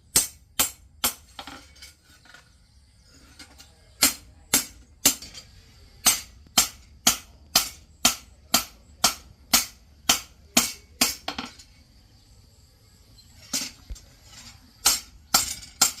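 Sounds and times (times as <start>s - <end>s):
hammer striking steel on anvil: 0.1s - 1.3s, 4.0s - 5.4s, 6.0s - 11.7s, 14.8s - 16.0s.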